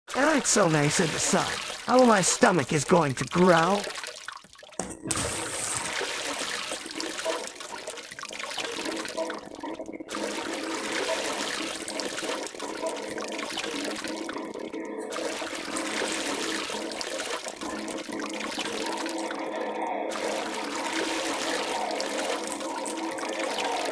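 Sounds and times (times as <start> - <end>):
stomach growling: 5.7 - 23.9.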